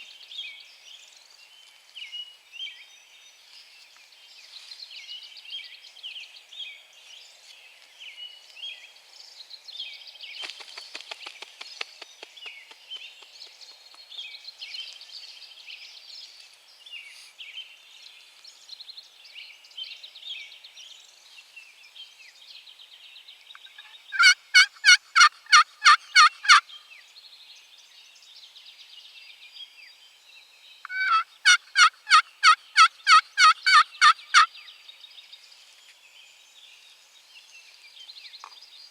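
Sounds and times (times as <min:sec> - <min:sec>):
faint songbirds singing: 0:00.0 - 0:38.9
turkey call yelps: 0:23.8 - 0:26.6, 0:30.9 - 0:34.5.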